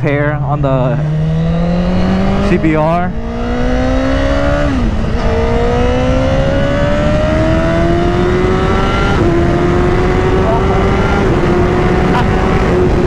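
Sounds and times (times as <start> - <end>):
motorcycle engine accelerating: 0.0 - 13.0
wind noise: 1.0 - 13.0.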